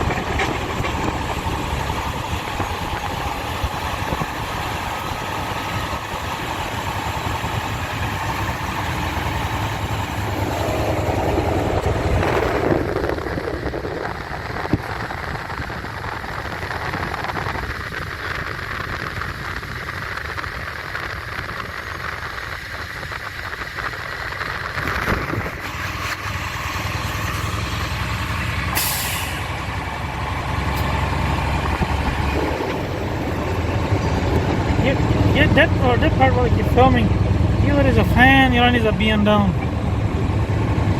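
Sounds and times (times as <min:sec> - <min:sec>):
diesel truck engine running: 0:00.0 - 0:40.9
air brake hisses: 0:28.7 - 0:29.6.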